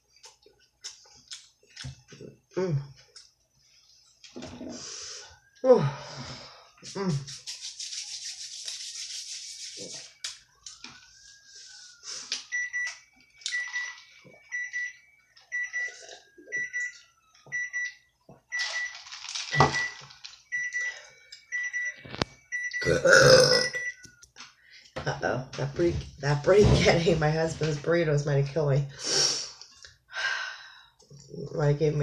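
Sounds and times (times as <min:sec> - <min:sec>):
repeating electronic beep: 0:20.5 - 0:24.0.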